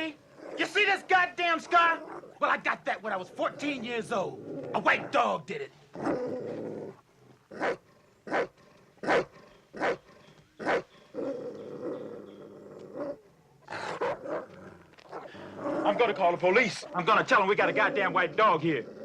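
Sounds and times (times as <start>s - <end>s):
dog growling: 0.0s - 0.8s, 1.6s - 5.2s, 5.9s - 19.0s
dog barking aggressively: 7.5s - 10.9s, 13.7s - 14.5s.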